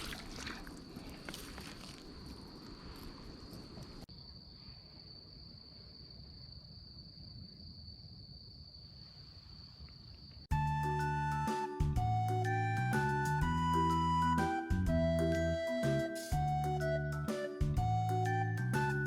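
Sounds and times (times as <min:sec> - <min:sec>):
water sloshing: 0:00.0 - 0:04.0
music: 0:10.5 - 0:19.0.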